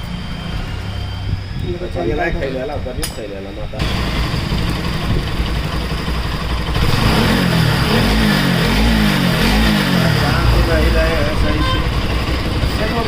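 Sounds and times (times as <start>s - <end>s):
motorcycle engine running: 3.8s - 13.0s
man talking: 10.0s - 11.8s.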